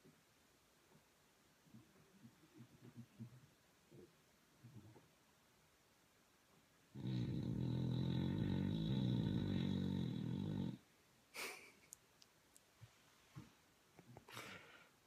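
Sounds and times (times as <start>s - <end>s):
dog snoring: 6.9s - 10.8s.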